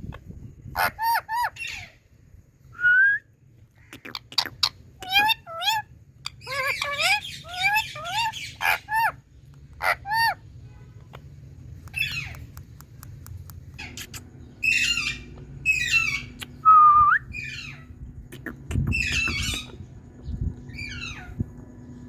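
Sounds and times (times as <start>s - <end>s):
parakeet rough calls: 3.8s - 9.2s, 9.8s - 10.4s, 13.8s - 16.5s, 17.3s - 19.9s.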